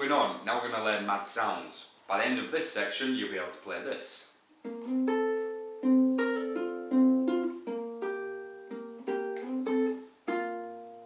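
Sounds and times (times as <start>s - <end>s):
ukulele fingerpicked: 4.5s - 11.0s.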